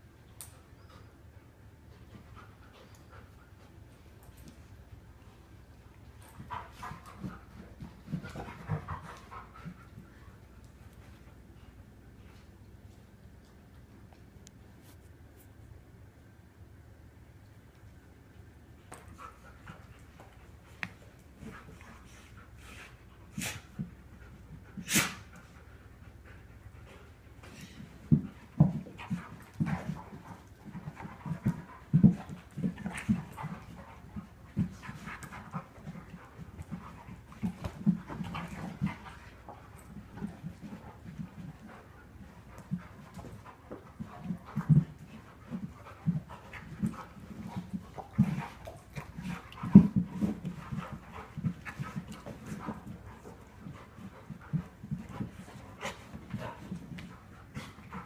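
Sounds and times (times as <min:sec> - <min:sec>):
dog panting heavily: 0:21.4 - 0:58.0.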